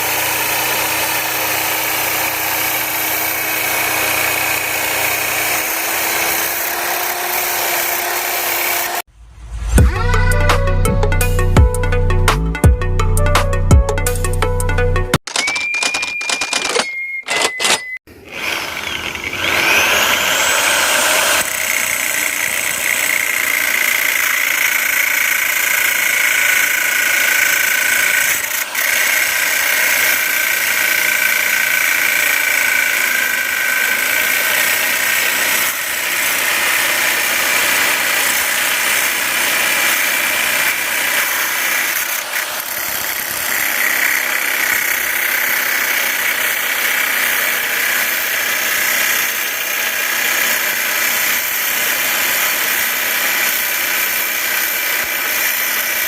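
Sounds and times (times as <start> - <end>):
electric drill whining: 15.4 - 56.0.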